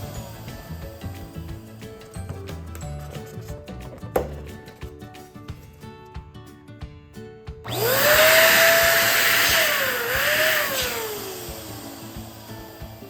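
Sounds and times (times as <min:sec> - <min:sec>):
electric pump motor whining: 0:07.7 - 0:13.0.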